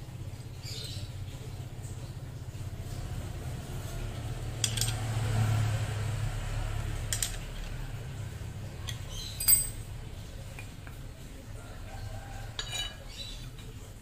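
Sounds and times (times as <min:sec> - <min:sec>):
metallic clinks of tools: 0:09.4 - 0:09.9.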